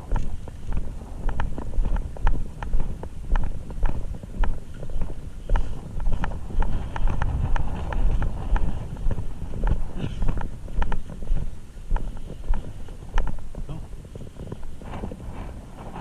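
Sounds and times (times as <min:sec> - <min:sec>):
running footsteps: 0:00.0 - 0:16.0
wind buffeting microphone: 0:00.0 - 0:16.0.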